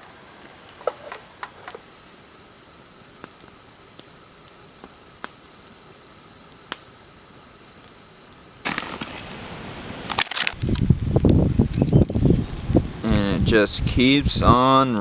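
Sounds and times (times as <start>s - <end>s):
beans sizzling: 0.0s - 15.0s
sharp pops: 8.6s - 13.1s.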